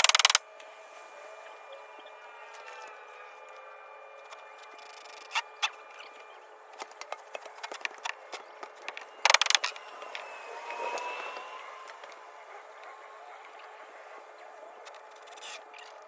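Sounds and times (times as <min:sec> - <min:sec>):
drill ratcheting clicks: 0:00.0 - 0:00.4, 0:09.3 - 0:09.8
faint rising whine: 0:00.4 - 0:16.0
knocks and clicks on wood: 0:06.8 - 0:09.8.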